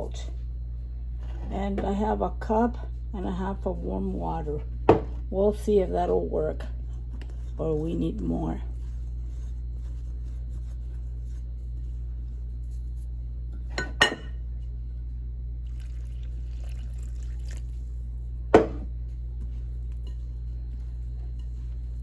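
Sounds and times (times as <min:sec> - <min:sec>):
steady low hum: 0:00.0 - 0:22.0
cup clinking against bowl: 0:13.7 - 0:14.4.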